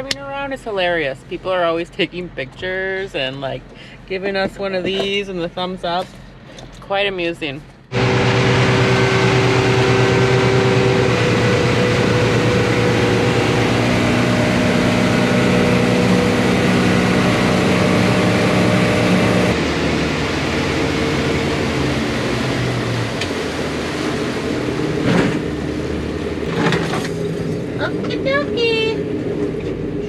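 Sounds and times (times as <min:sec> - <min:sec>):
vehicle engine running: 0:07.6 - 0:30.0
rushing noise: 0:07.9 - 0:26.1.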